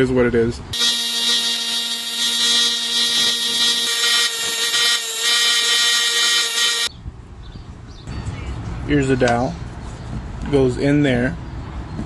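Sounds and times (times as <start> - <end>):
power tool whining: 0.8 - 6.9.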